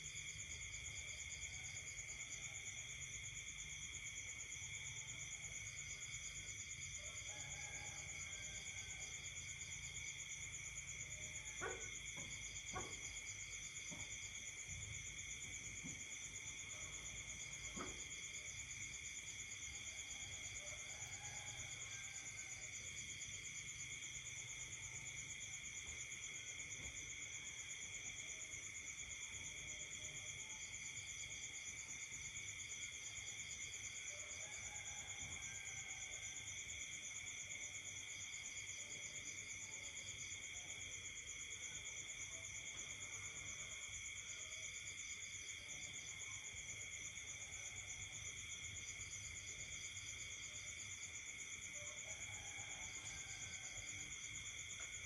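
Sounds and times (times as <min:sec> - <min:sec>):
crickets and insects trilling: 0:40.0 - 0:55.0.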